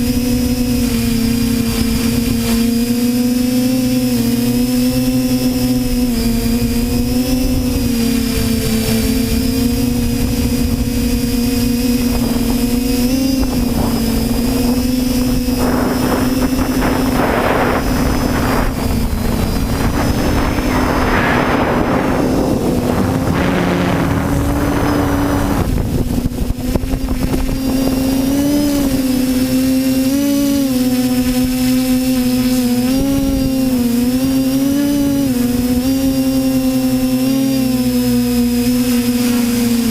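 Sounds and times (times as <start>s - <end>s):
drone propellers humming: 0.0s - 39.9s
rushing noise: 8.1s - 26.8s.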